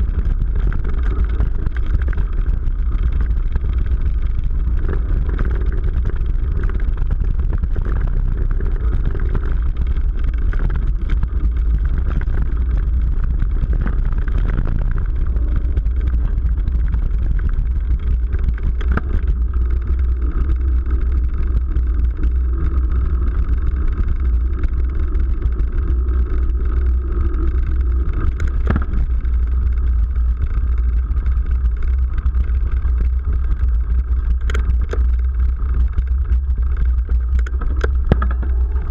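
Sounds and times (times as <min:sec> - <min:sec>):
wind and tyre rumble: 0:00.0 - 0:38.9
sharp knocks: 0:38.1 - 0:38.8.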